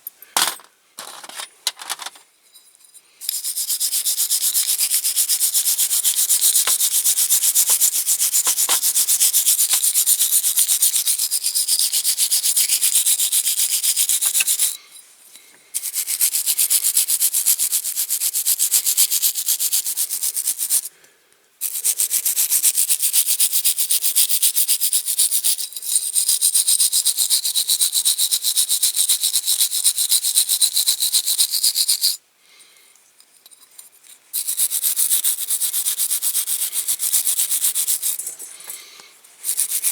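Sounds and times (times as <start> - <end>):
wire brush scraping metal: 3.3 - 14.8.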